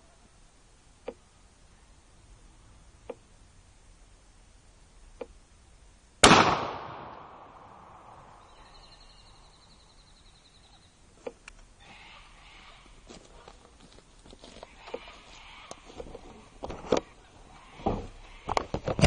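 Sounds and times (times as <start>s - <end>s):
shotgun shot: 6.2s - 8.2s.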